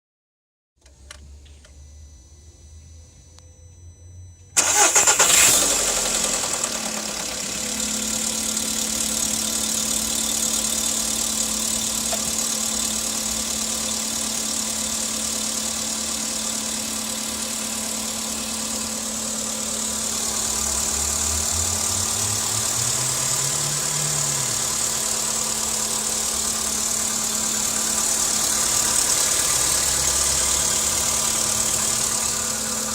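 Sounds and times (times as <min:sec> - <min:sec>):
car engine starting and idling: 0:04.4 - 0:32.9
engine knock: 0:19.7 - 0:32.9.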